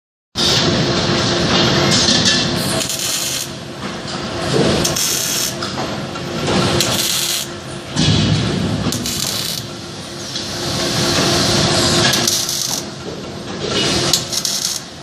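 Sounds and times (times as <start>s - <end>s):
welding machinery humming: 0.4s - 15.0s.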